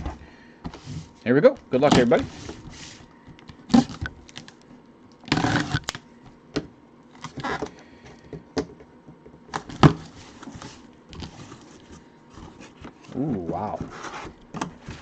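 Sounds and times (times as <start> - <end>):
cardboard box rustling and scraping: 2.0 - 3.1, 10.0 - 15.0.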